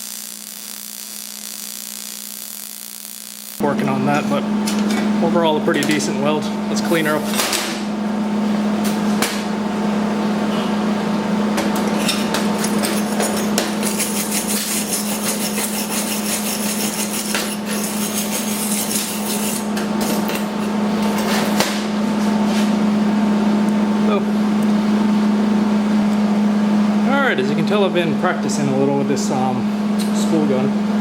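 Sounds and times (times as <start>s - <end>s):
steady low hum: 0.0s - 4.6s
metal tool scratching metal: 12.0s - 20.5s.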